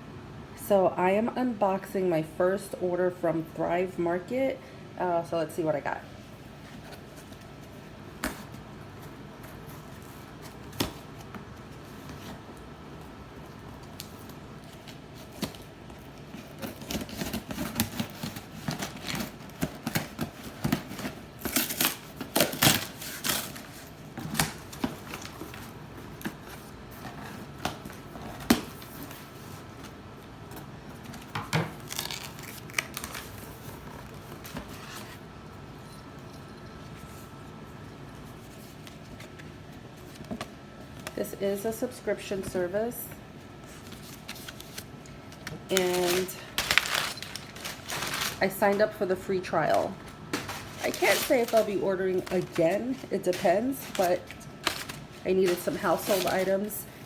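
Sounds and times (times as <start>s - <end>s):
cardboard box being unpacked: 13.8s - 30.0s, 31.0s - 35.2s, 45.7s - 48.9s, 50.1s - 57.0s.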